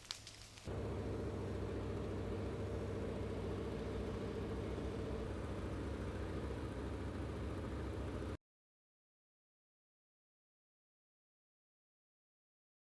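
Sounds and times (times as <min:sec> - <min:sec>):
engine drone: 0:00.7 - 0:08.4.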